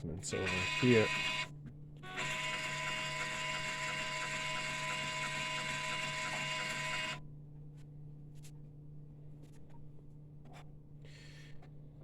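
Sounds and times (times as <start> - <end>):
printer motor whirring: 0.3 - 1.5, 2.1 - 7.2.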